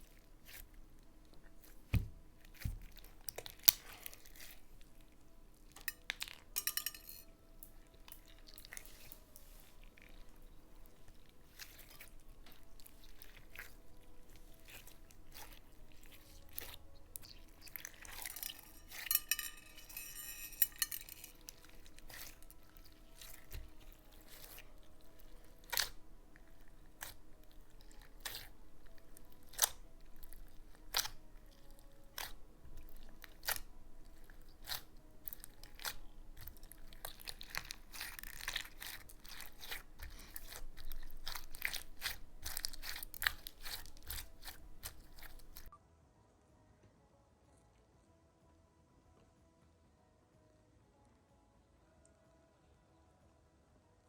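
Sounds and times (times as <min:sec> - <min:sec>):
slime crackling stretch: 0:21.3 - 0:45.7.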